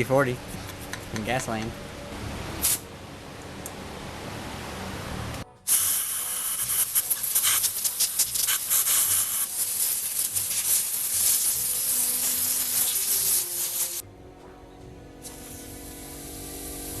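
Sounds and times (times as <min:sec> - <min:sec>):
spray hissing and spattering: 0:02.6 - 0:02.8, 0:05.6 - 0:14.0.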